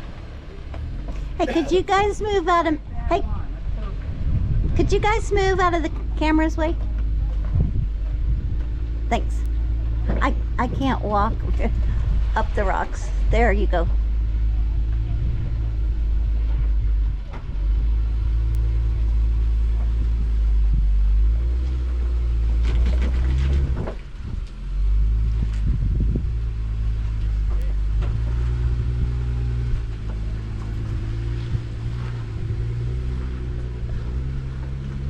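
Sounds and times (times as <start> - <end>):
off-road engine rumbling: 0.0 - 35.0.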